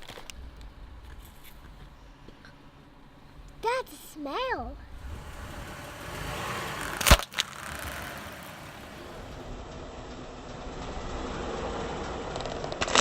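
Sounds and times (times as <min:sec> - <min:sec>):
slowly moving car: 0:04.8 - 0:13.0.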